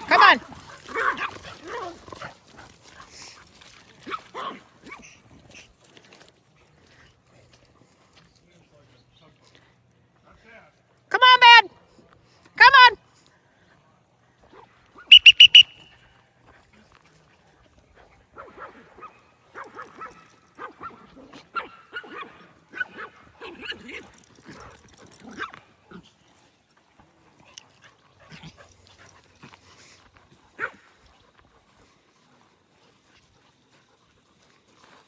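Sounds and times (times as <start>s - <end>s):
dogs yipping and yelping: 15.0s - 15.9s, 18.4s - 26.0s.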